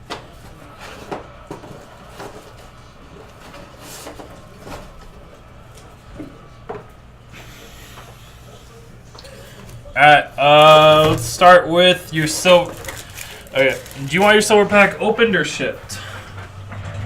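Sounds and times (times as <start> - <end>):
card packs rustling: 0.0 - 6.1, 9.2 - 16.6.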